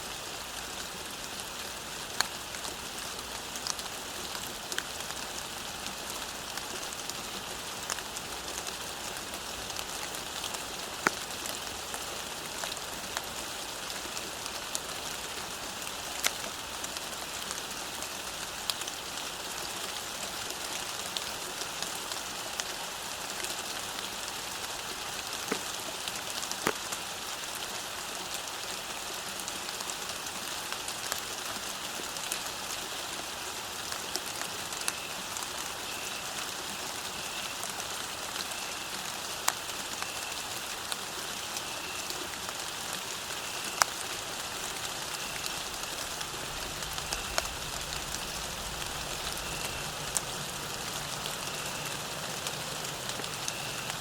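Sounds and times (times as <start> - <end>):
rain hissing on road: 0.0 - 54.0
water drips: 43.5 - 54.0.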